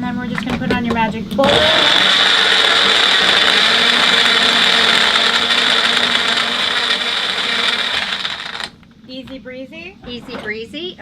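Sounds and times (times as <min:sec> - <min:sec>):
blender running: 0:01.4 - 0:08.8.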